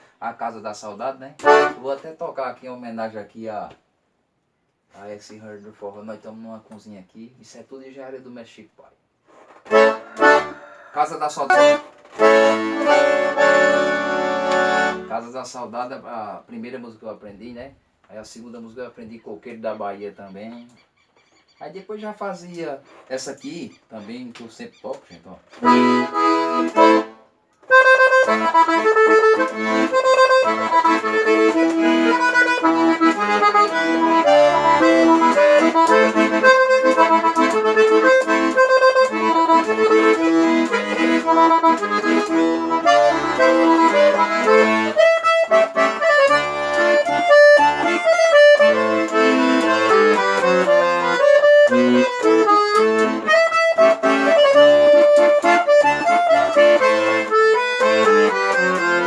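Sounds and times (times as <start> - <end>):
solo accordion playing: 1.4 - 1.9, 9.7 - 15.3, 25.6 - 59.0.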